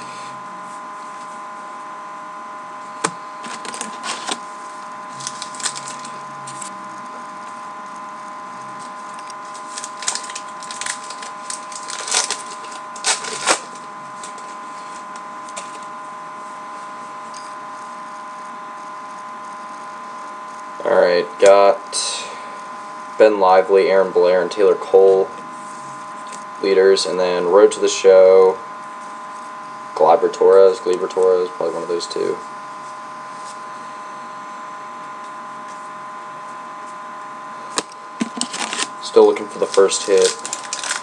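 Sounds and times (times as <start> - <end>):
steady electrical hum: 0.0 - 41.0
trading cards snapping and rustling: 9.7 - 14.4, 39.7 - 41.0.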